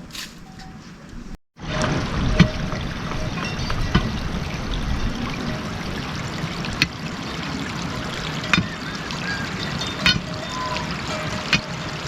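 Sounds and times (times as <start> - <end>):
water running: 1.6 - 12.0.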